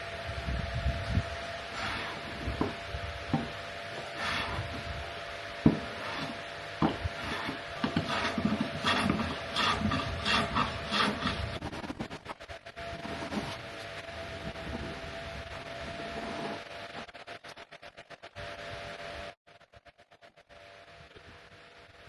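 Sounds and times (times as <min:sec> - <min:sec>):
wood being rasped by hand: 0:01.7 - 0:04.9, 0:05.7 - 0:12.4.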